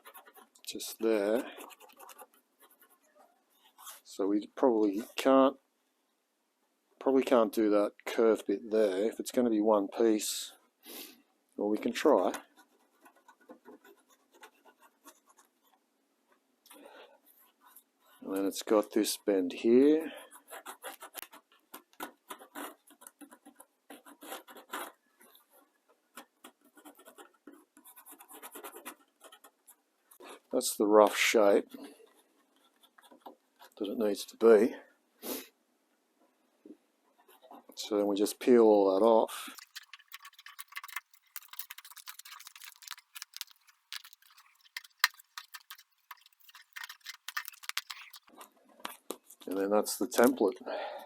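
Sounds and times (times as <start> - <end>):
pencil scratching on masking tape: 0.0 - 0.6, 1.3 - 4.0, 20.2 - 25.0, 26.4 - 29.7
paper peeling and crinkling: 39.6 - 48.3.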